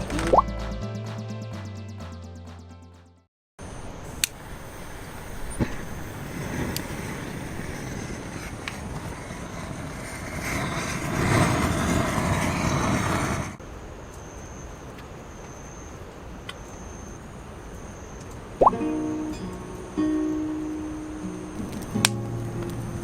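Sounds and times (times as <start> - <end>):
broad rumbling noise: 4.8 - 13.6.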